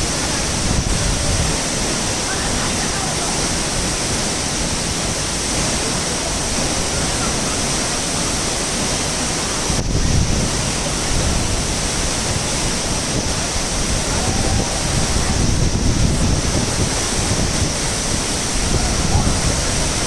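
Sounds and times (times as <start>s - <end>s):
wind buffeting microphone: 0.0s - 2.4s, 9.6s - 20.0s
waterfall rushing: 0.0s - 20.0s.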